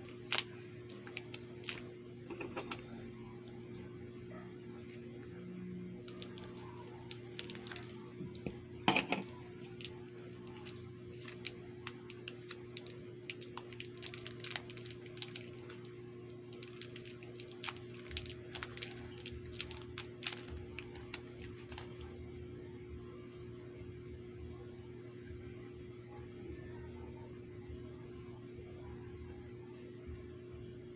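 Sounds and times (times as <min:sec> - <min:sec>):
candy wrappers crinkling: 0:00.0 - 0:02.0, 0:06.0 - 0:08.5, 0:09.2 - 0:22.2
steady low hum: 0:00.0 - 0:30.9.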